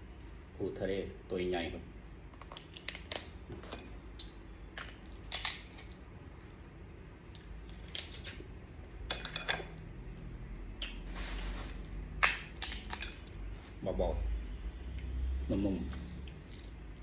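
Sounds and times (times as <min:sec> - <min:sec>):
low steady hum: 0:00.0 - 0:17.0
crab shell cracking: 0:04.2 - 0:06.0.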